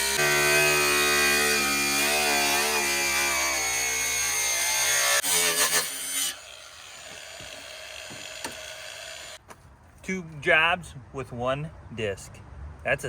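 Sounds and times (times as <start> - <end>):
angle grinder cutting sheet metal: 0.0 - 9.4.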